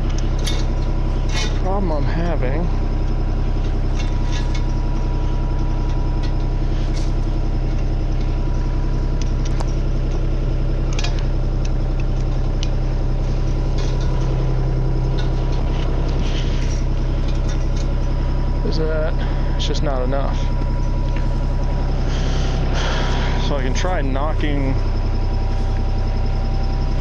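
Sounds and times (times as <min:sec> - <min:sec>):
excavator diesel engine running: 0:00.0 - 0:27.0.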